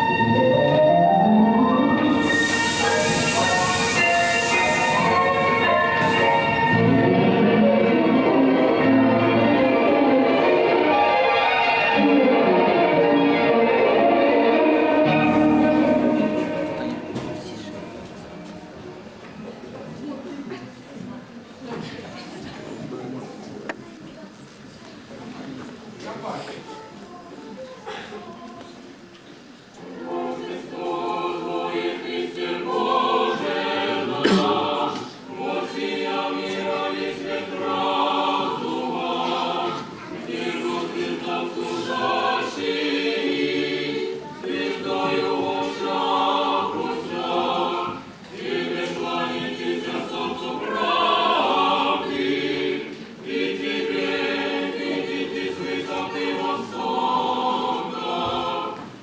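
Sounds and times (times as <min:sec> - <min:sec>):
choir singing: 0:00.0 - 0:19.6, 0:29.7 - 0:59.0.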